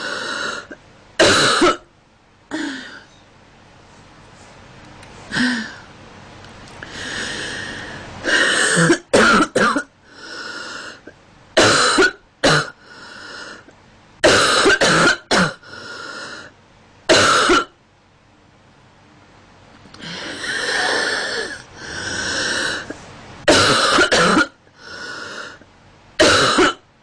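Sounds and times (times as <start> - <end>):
girl coughing: 0.6 - 1.8, 8.6 - 9.9, 11.6 - 12.8, 14.2 - 15.6, 17.1 - 17.7, 23.5 - 24.6, 26.2 - 26.8.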